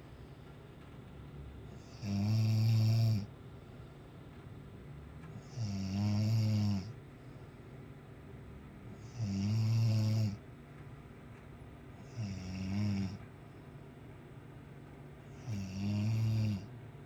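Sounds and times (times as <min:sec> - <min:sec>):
quiet breathing: 0:01.6 - 0:04.4, 0:05.3 - 0:08.1, 0:11.9 - 0:14.1, 0:15.1 - 0:16.8
man snoring: 0:01.7 - 0:03.3, 0:05.4 - 0:07.0, 0:08.9 - 0:10.4, 0:12.0 - 0:13.2, 0:15.3 - 0:16.7.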